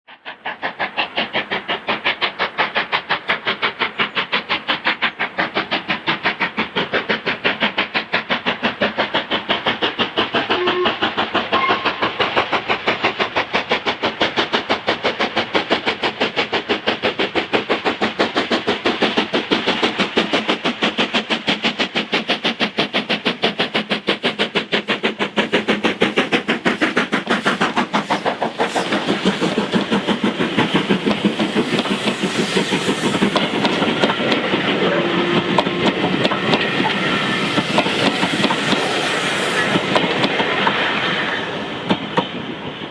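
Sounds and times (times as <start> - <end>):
steam locomotive exhaust beating: 0.1 - 42.9.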